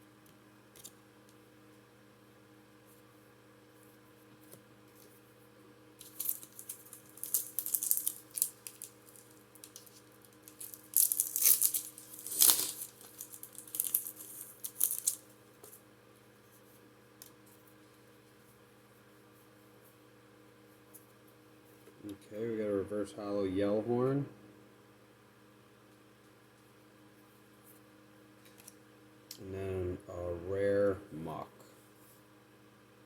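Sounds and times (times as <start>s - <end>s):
foil wrapper tearing and crinkling: 6.0s - 15.3s.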